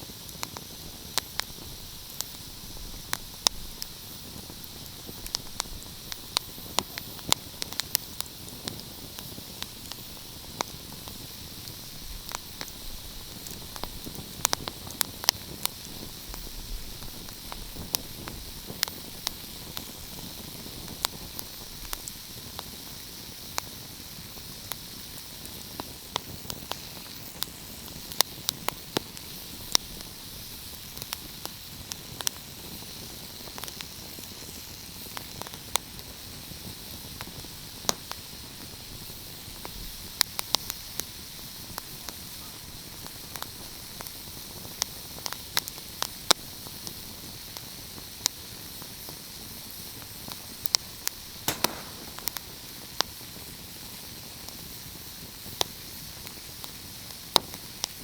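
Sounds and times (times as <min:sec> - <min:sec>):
wood fire crackling: 0:00.2 - 0:29.8, 0:49.9 - 0:53.2.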